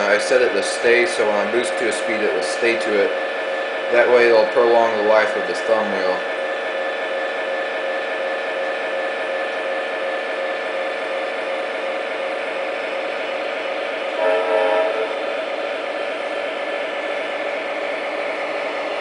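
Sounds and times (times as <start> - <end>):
diesel engine sound from speaker: 0.0 - 19.0
horn chord: 14.2 - 15.2.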